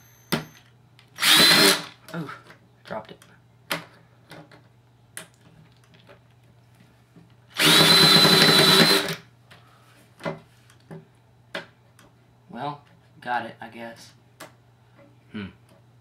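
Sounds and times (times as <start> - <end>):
power drill whine: 1.2 - 1.9, 7.6 - 9.2.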